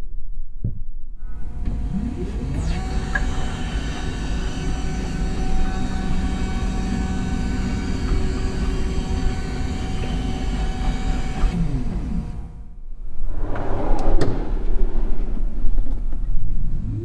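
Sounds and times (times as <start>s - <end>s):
electric motor hum: 1.4s - 12.6s.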